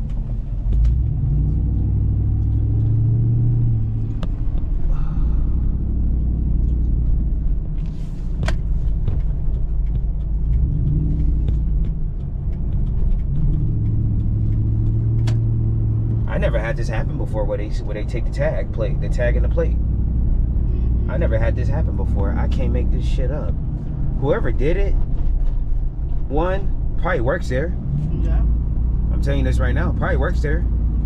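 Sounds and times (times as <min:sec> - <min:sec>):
engine and road rumble in cabin: 0:00.0 - 0:31.0
sharp clicks: 0:08.4 - 0:16.2.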